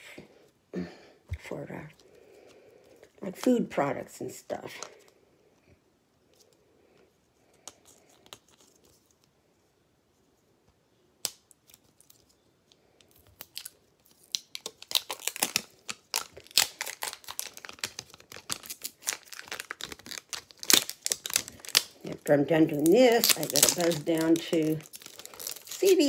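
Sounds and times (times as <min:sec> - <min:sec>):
plastic wrapping crackling: 0:13.0 - 0:26.0.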